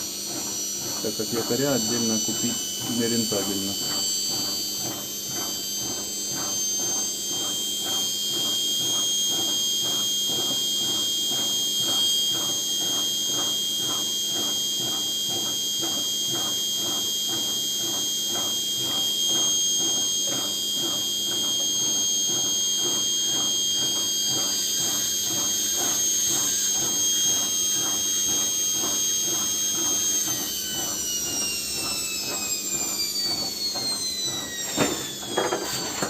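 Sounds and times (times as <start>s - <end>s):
electric motor whining: 0.2s - 7.8s, 19.4s - 36.0s.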